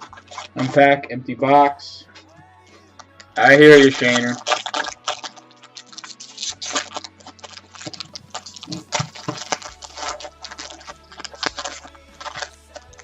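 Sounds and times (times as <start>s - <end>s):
trading cards clicking and rustling: 2.9s - 13.0s.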